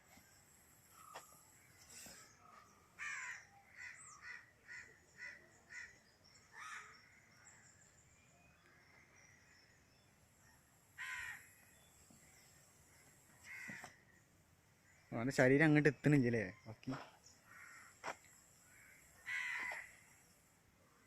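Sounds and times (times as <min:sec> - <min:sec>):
crows cawing: 0:03.0 - 0:07.2, 0:11.0 - 0:11.6, 0:13.4 - 0:14.0, 0:17.4 - 0:20.2.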